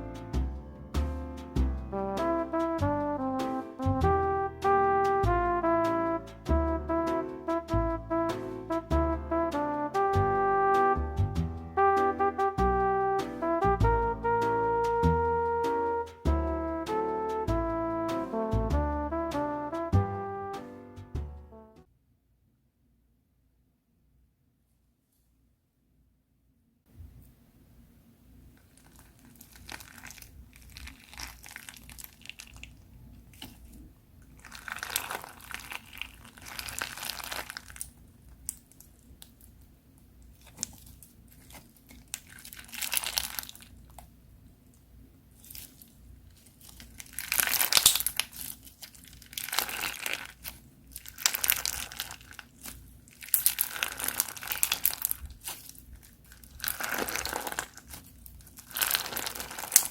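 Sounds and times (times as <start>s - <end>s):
slime crackling and crunching: 28.6s - 32.8s, 34.4s - 38.7s, 40.3s - 43.9s, 45.3s - 59.9s.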